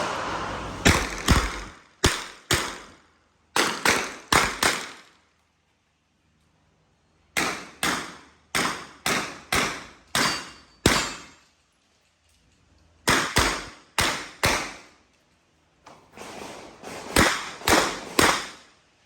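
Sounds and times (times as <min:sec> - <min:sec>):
handgun shots: 0:07.4 - 0:11.3.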